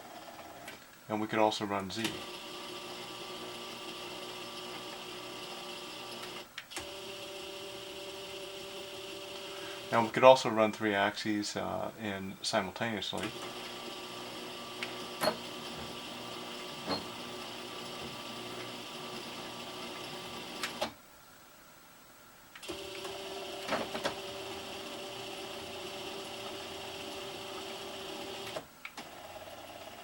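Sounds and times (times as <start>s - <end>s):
machine motors whining: 13.2s - 20.9s.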